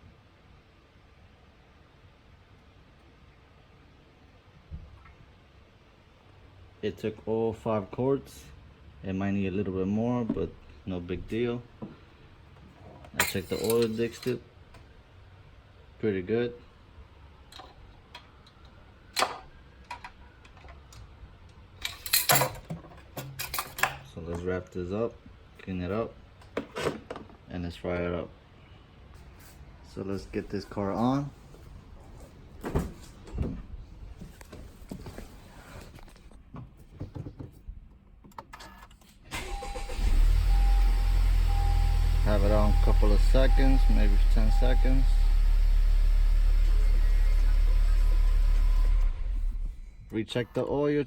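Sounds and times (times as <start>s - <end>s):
car engine cranking and idling: 39.3s - 50.2s.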